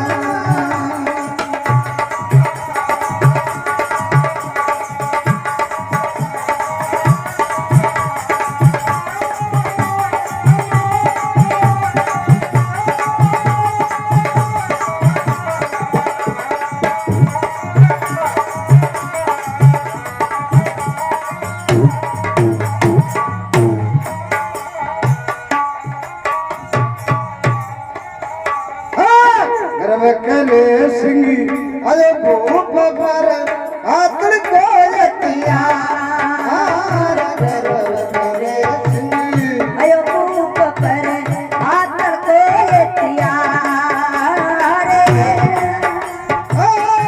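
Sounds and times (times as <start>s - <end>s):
hand drum beat: 0.0s - 27.8s, 44.9s - 47.0s.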